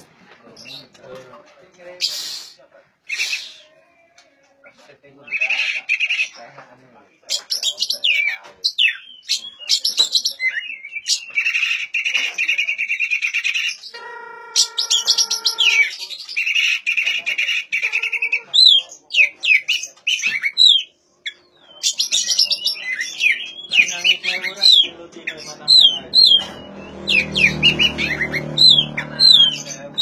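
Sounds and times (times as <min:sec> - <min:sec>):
bird singing varied song: 0:07.2 - 0:30.0.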